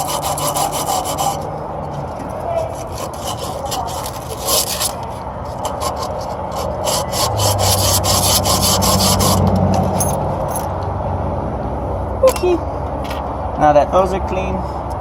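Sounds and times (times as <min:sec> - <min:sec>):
copper tubing being scraped: 0:00.0 - 0:10.5.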